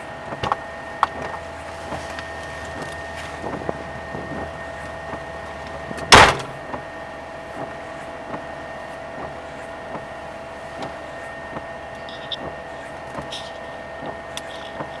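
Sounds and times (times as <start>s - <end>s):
vehicle humming: 0.0s - 15.0s
loud thud of vehicle door: 6.0s - 6.8s.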